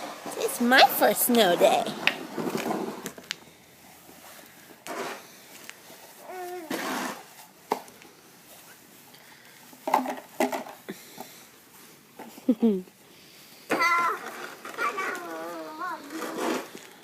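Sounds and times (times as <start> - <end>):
snow scraping and crunching: 0.0 - 3.2, 3.8 - 9.8, 13.2 - 17.0
young child vocalizing: 6.3 - 6.8.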